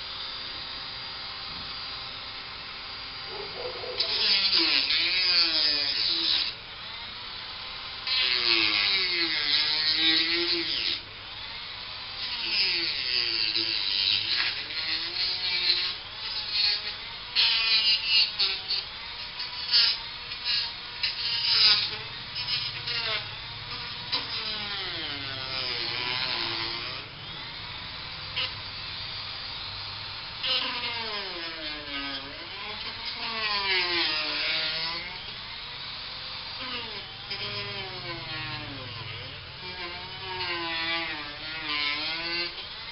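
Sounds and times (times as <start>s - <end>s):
handheld power tool running: 0.0s - 42.9s
scratchy grinding noise: 3.3s - 6.5s, 12.4s - 29.3s.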